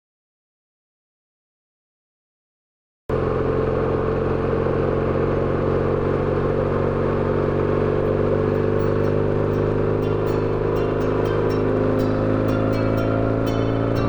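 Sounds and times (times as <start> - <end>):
motorcycle engine running: 3.1 - 14.0.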